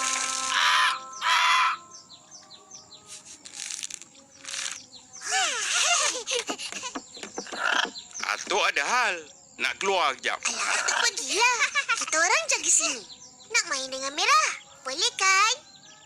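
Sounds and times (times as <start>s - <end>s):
birds squawking harshly: 0.0s - 2.1s, 4.7s - 9.2s, 10.4s - 15.5s
whistled bird calls: 0.0s - 3.4s
faint bird chirps: 0.0s - 16.0s.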